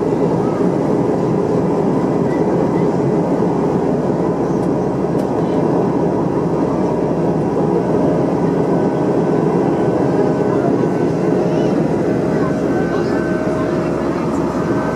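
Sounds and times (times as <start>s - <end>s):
airplane cabin jet engine drone: 0.0s - 14.9s.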